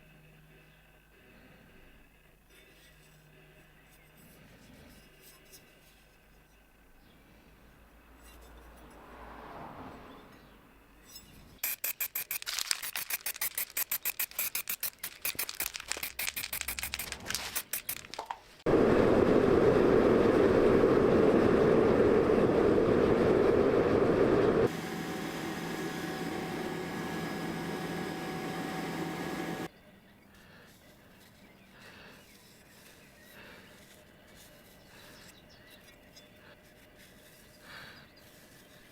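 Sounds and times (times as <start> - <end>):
loud steady machine noise: 18.7 - 29.7.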